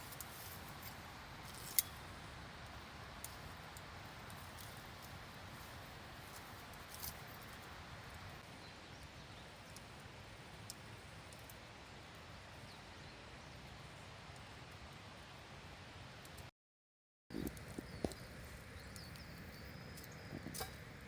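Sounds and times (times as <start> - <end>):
campfire crackling and popping: 0.0 - 12.6, 17.3 - 21.0
steady low hiss: 0.0 - 16.5.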